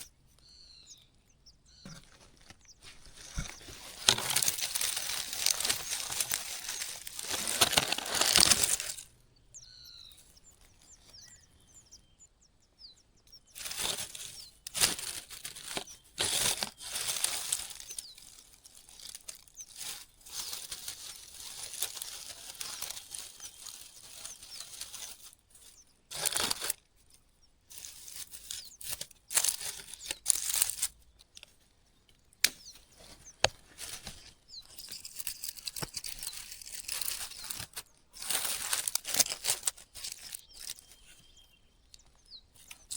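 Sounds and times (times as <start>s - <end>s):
rustling and crinkling: 1.7s - 11.4s, 13.3s - 42.9s
faint high chirps: 8.1s - 25.9s, 34.1s - 42.9s.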